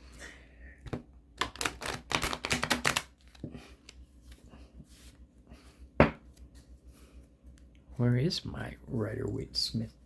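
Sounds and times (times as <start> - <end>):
cards shuffling: 1.4 - 5.2.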